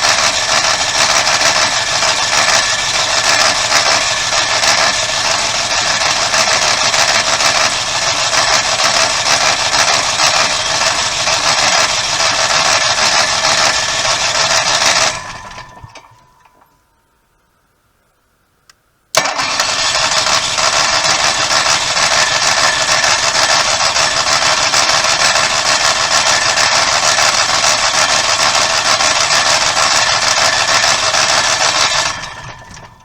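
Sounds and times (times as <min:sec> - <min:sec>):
generator starter cranking engine: 0:00.0 - 0:16.8, 0:19.1 - 0:33.0.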